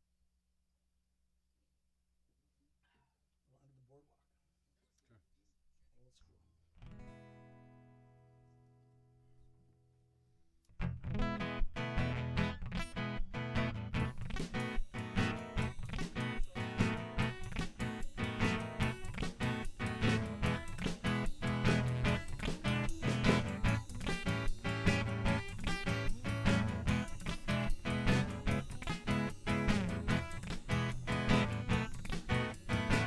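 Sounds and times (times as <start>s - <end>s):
strummed guitar: 6.8s - 9.1s, 10.8s - 33.0s
percussion beat: 11.2s - 33.0s.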